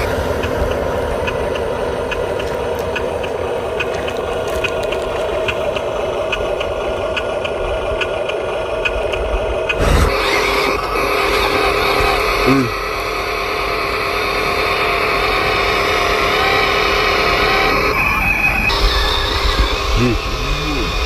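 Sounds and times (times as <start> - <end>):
light regular ticking: 0.3 - 9.8
small electric motor whining: 9.8 - 21.0.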